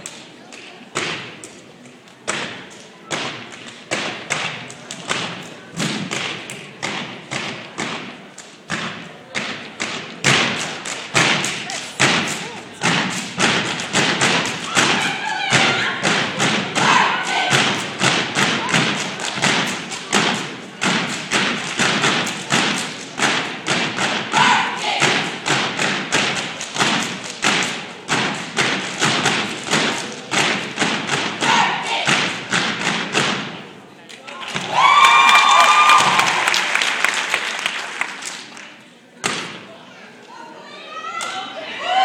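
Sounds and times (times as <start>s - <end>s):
rhythmic stomps and claps: 2.2s - 33.7s, 34.4s - 39.6s
people shouting calls: 14.6s - 16.2s, 16.8s - 17.7s, 24.3s - 25.2s, 31.4s - 32.1s.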